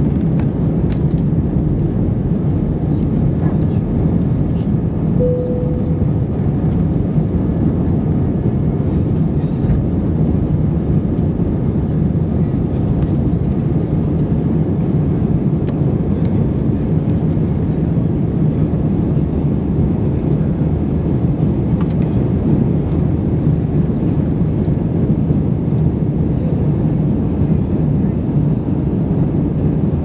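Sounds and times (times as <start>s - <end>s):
airplane rumble: 0.0s - 30.0s
faint hum: 5.2s - 7.2s.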